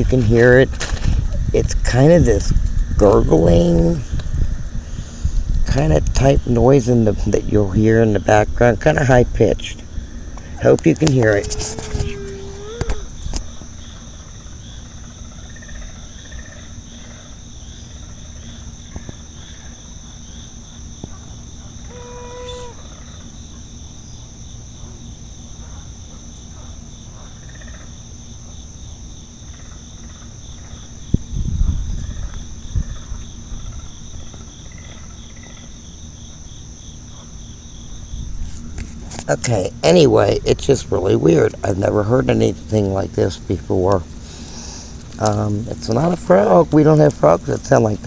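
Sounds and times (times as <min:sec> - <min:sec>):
insects trilling: 0:00.0 - 0:48.0
animal gurgling calls: 0:11.1 - 0:13.2, 0:21.8 - 0:23.0.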